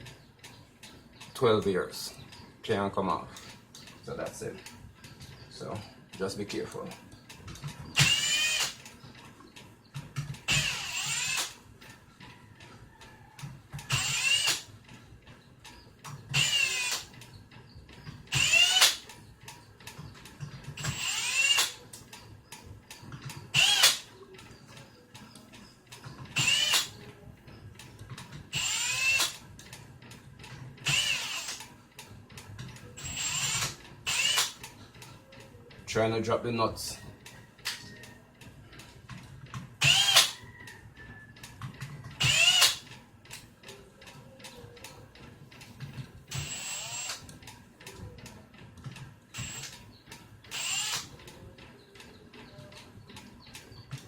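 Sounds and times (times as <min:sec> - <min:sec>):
cordless drill whining: 0:07.9 - 0:09.0, 0:10.4 - 0:11.6, 0:13.4 - 0:14.7, 0:16.3 - 0:17.1, 0:18.3 - 0:19.1, 0:20.7 - 0:21.8, 0:23.5 - 0:24.1, 0:26.3 - 0:27.0, 0:28.5 - 0:29.4, 0:30.8 - 0:31.7, 0:33.0 - 0:34.6, 0:39.8 - 0:40.4, 0:42.2 - 0:42.9, 0:46.3 - 0:47.3, 0:49.4 - 0:49.9, 0:50.5 - 0:51.2.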